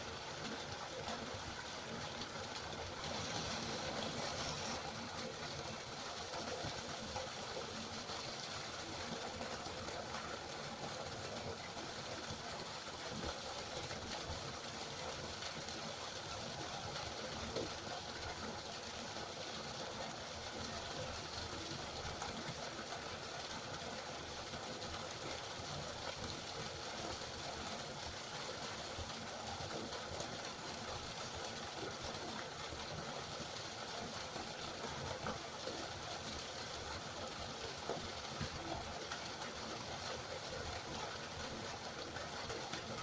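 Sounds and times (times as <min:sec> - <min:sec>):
river water flowing: 0:00.0 - 0:18.9.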